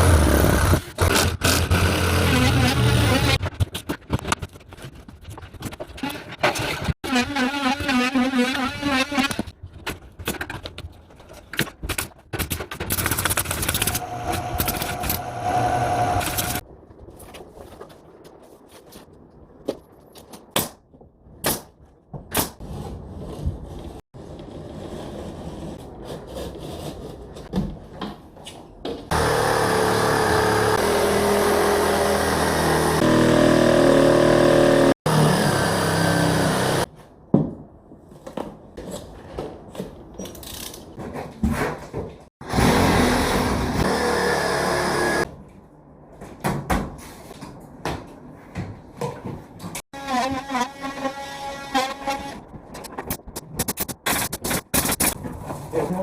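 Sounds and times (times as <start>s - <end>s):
power tool running: 29.1s - 36.9s, 42.5s - 45.2s.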